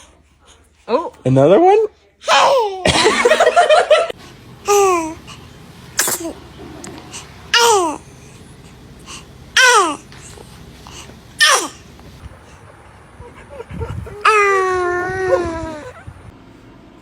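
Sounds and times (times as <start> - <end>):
baby sneezing: 2.2 - 3.0, 6.0 - 6.4, 7.1 - 8.0, 9.6 - 10.0, 11.4 - 11.8.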